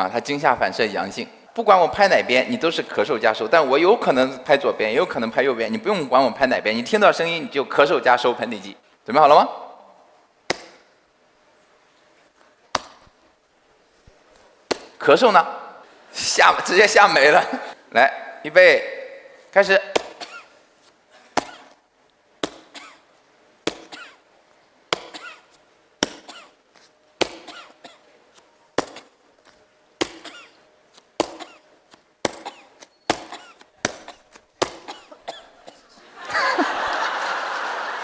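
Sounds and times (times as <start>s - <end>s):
person coughing: 20.0s - 20.6s, 22.7s - 23.1s, 25.0s - 25.5s, 26.2s - 26.6s, 27.4s - 28.0s, 30.2s - 30.6s, 32.4s - 34.2s, 34.8s - 36.5s.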